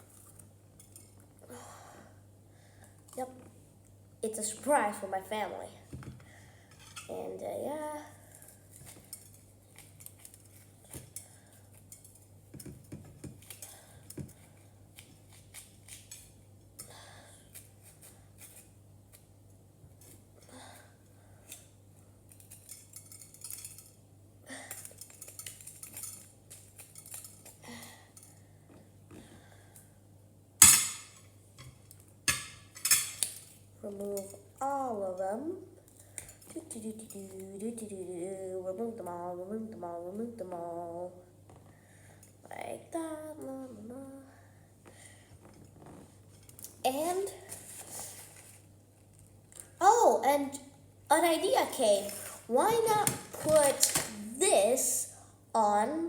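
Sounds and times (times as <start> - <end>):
cutlery tapping crockery: 30.6 - 33.4.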